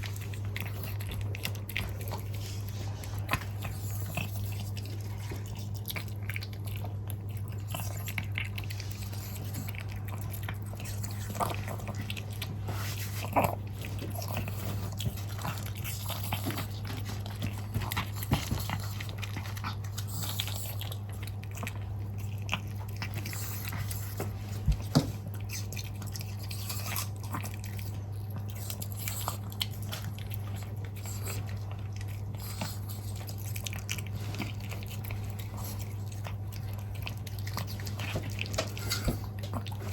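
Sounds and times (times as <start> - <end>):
dog chewing food: 0.0 - 39.9.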